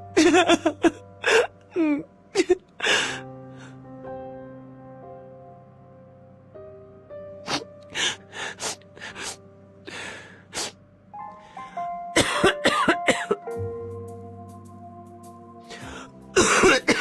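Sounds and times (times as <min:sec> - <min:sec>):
background music: 0:00.0 - 0:17.0
synthetic voice coughing: 0:12.2 - 0:13.4, 0:16.4 - 0:17.0.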